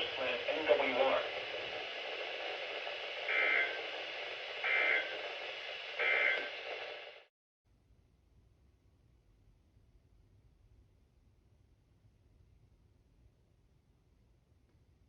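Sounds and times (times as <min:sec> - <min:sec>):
radio static hiss: 0:00.0 - 0:07.3
two-tone data bursts: 0:03.2 - 0:03.9, 0:04.6 - 0:05.2, 0:05.9 - 0:07.0.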